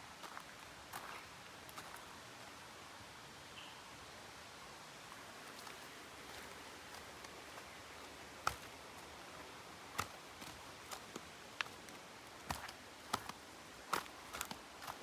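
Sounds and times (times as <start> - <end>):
faint steady hiss: 0.0 - 15.0.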